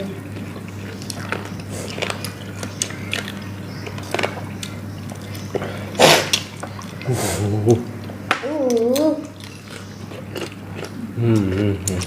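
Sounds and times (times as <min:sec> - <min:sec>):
people chewing: 0:00.0 - 0:12.0
small clicks and crunches: 0:00.3 - 0:05.6.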